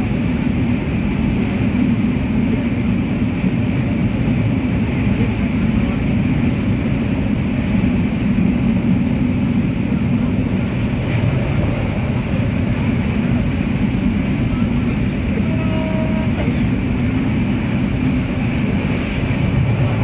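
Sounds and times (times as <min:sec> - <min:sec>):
train wheels rumbling on rails: 0:00.0 - 0:20.0.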